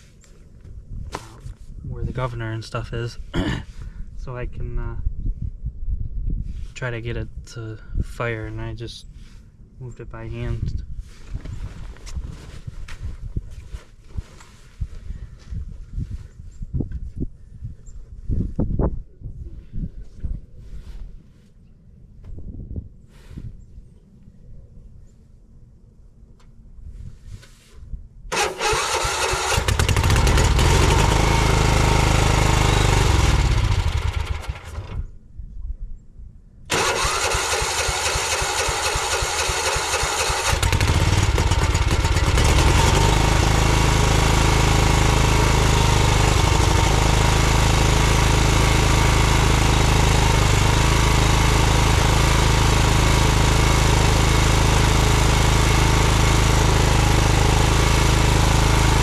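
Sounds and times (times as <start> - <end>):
small engine running unevenly: 28.3 - 35.0, 36.7 - 59.0.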